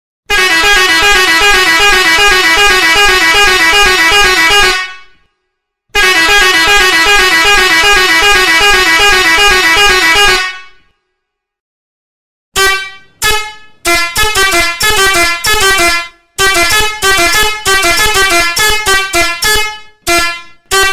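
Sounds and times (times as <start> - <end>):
warbling melodic air horn: 12.6 - 20.9.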